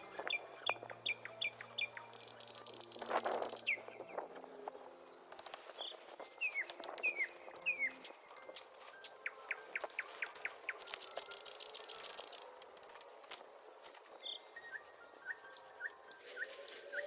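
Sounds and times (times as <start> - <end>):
birds chirping: 0.0 - 4.6, 5.6 - 17.0
high buzzy bird trill: 5.8 - 12.7.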